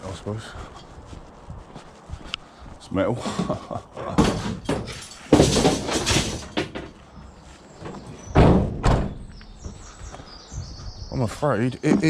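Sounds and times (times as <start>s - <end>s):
scrap metal knocking and clattering: 4.1s - 7.0s
heavy slams: 8.3s - 9.2s.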